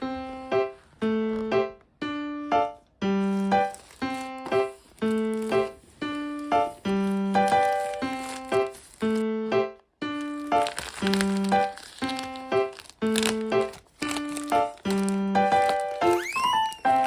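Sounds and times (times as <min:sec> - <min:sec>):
light bouncy piano tune: 0:00.0 - 0:17.0.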